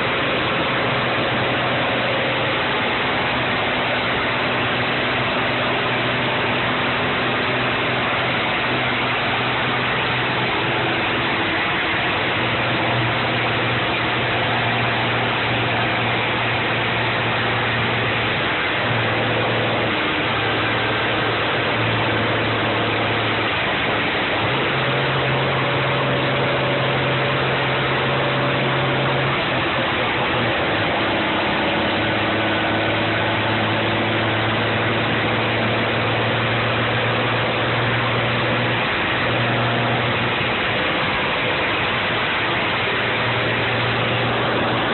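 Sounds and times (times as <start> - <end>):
loud rushing noise: 0.0 - 44.9
truck diesel engine running: 0.0 - 44.9.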